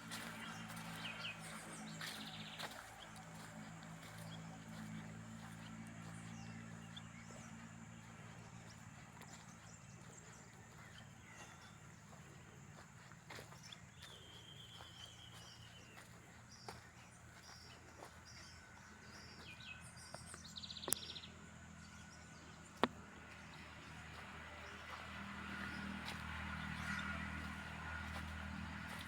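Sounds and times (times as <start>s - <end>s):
steady low hum: 0.0s - 29.0s
bird chirps: 13.0s - 21.3s.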